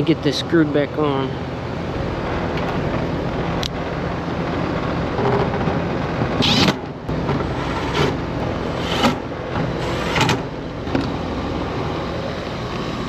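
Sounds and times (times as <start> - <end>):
air conditioner unit running: 0.0 - 13.0
screw gun driving screws: 6.4 - 6.8, 7.4 - 10.5.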